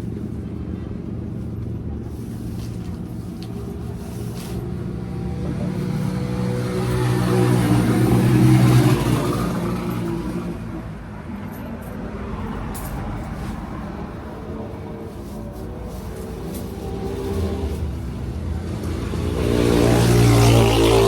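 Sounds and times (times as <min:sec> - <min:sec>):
vehicle driving past: 0:04.4 - 0:11.0, 0:16.1 - 0:21.0.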